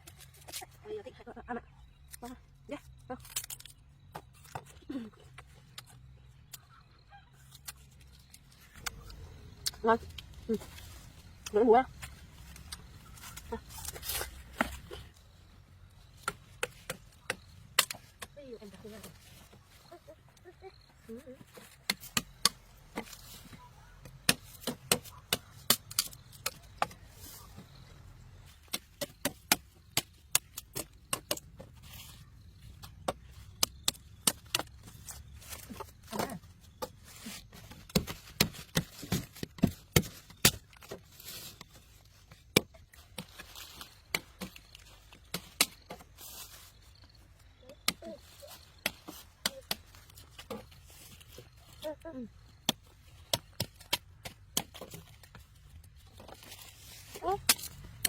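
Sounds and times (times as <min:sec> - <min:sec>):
blade chopping sugarcane stalks: 0:16.2 - 0:18.4, 0:21.6 - 0:27.6, 0:28.5 - 0:32.1, 0:32.8 - 0:46.0, 0:52.6 - 0:55.3, 0:56.2 - 0:58.0.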